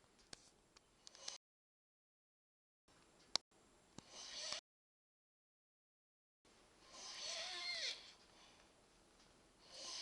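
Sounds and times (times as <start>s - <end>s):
man breathing in sleep: 9.6s - 10.0s.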